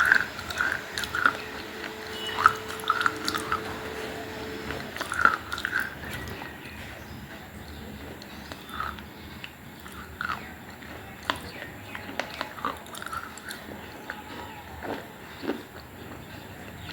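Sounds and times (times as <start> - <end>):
person chewing food: 7.6 - 16.9.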